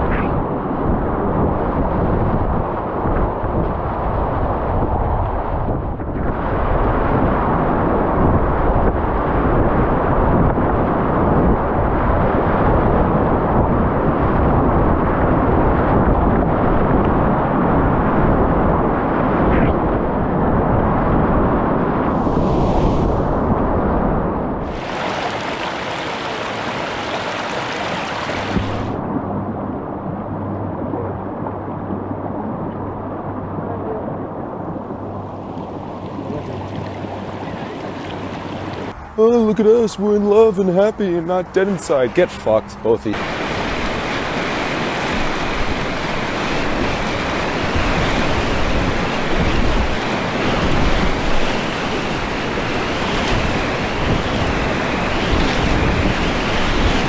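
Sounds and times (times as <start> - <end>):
whitewater rapids rushing: 24.7 - 29.0, 36.0 - 57.0.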